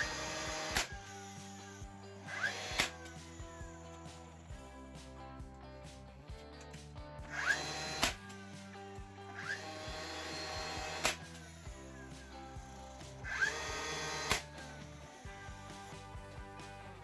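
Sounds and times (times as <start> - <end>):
nailer motor whirring: 0.0 - 5.2, 7.3 - 16.8
background music: 0.0 - 17.0
nailer firing with a snap: 2.4 - 3.0, 7.4 - 8.3, 9.4 - 11.3, 13.4 - 14.5.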